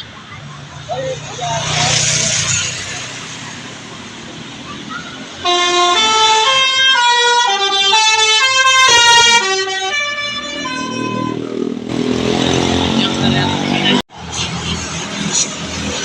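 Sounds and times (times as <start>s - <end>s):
bus engine rushing past: 0.0s - 6.4s, 10.4s - 16.0s
multi-tone bus horn melody: 5.4s - 14.0s.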